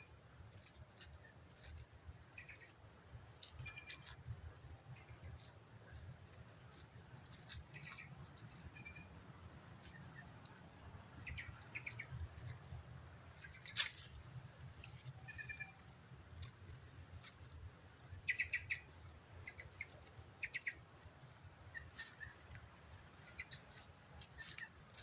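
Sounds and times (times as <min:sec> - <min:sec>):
small animal chirping: 0:03.4 - 0:04.2, 0:04.9 - 0:05.6, 0:07.4 - 0:09.2, 0:11.2 - 0:12.6, 0:13.3 - 0:13.9, 0:15.2 - 0:15.9, 0:17.3 - 0:22.6, 0:23.2 - 0:24.8
sharp squeak: 0:08.7 - 0:09.1, 0:15.2 - 0:15.8.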